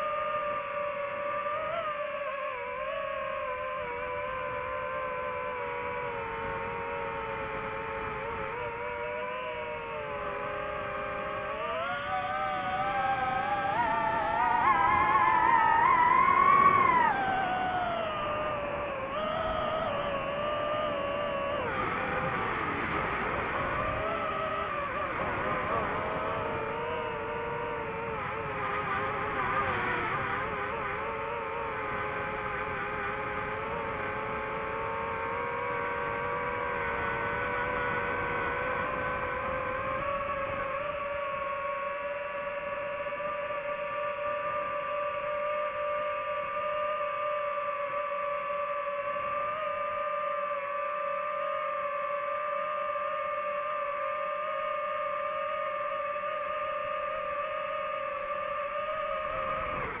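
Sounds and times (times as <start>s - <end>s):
drone propellers whining: 0.0s - 60.0s.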